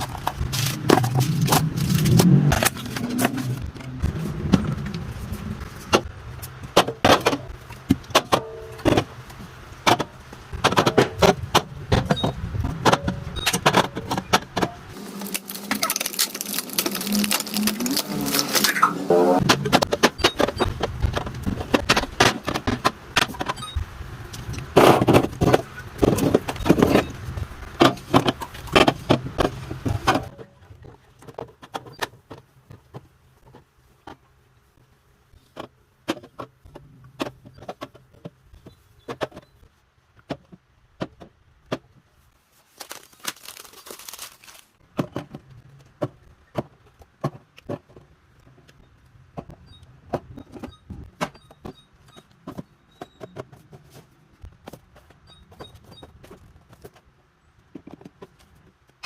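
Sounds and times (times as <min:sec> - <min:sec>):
plastic containers clattering: 0:09.8 - 0:23.6, 0:27.8 - 0:34.2
packaging rustling: 0:14.9 - 0:18.9, 0:42.5 - 0:44.8.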